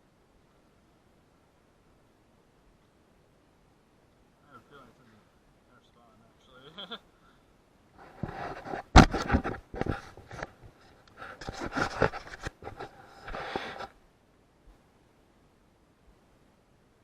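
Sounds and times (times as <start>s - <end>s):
rustling and scraping: 8.0s - 14.0s.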